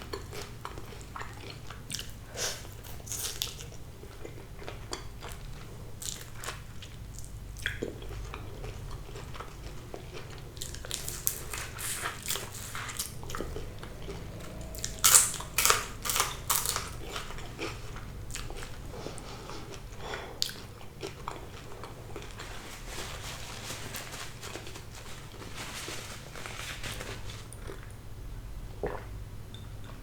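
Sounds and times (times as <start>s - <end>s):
quiet chewing: 0.0s - 28.0s
crunchy bites of fried fish: 14.4s - 17.8s.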